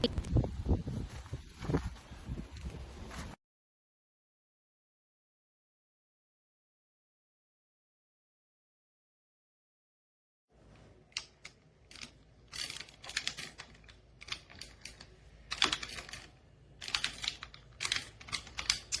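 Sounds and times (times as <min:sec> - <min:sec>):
sharp clicks and clattering rattles: 0:11.1 - 0:19.0.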